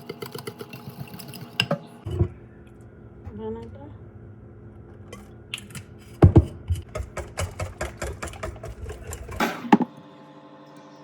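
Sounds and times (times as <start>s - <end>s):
utensil knocking against mixing bowl: 6.3s - 9.9s.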